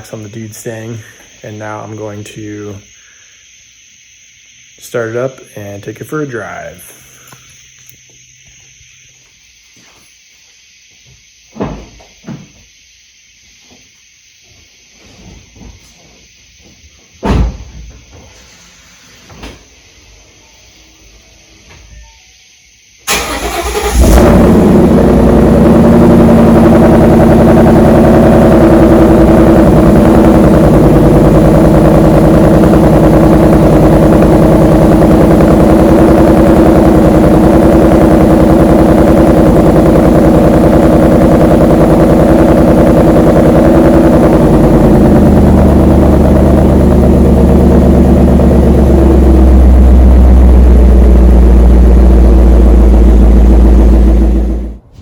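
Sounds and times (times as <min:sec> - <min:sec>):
car engine idling: 0:23.1 - 0:55.0
car engine starting: 0:23.1 - 0:55.0.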